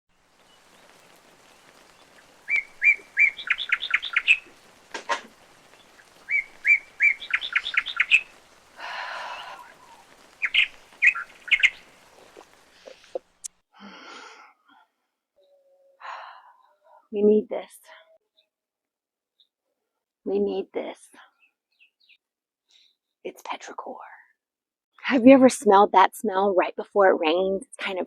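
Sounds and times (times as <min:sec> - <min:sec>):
songbird singing: 0:00.1 - 0:13.5, 0:15.4 - 0:16.0, 0:21.3 - 0:22.2.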